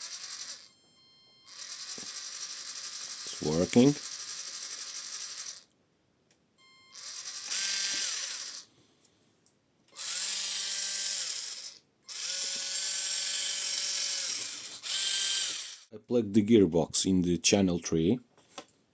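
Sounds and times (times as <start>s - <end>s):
electric motor whining: 0.0s - 0.7s, 1.5s - 5.7s, 6.9s - 8.7s, 10.0s - 15.9s
gear whir: 0.0s - 0.8s, 1.5s - 5.7s, 6.9s - 8.7s, 10.0s - 15.9s.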